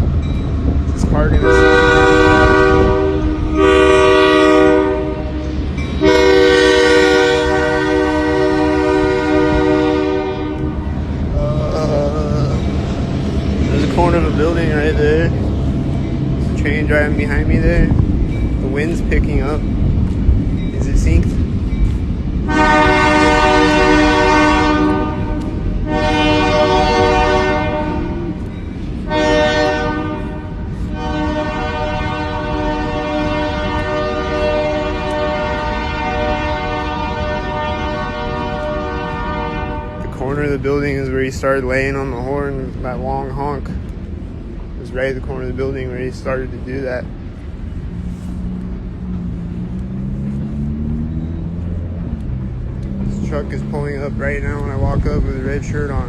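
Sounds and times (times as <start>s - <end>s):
steady low rumble: 0.0s - 56.0s
train air horn blasts: 1.2s - 11.9s, 22.4s - 40.5s.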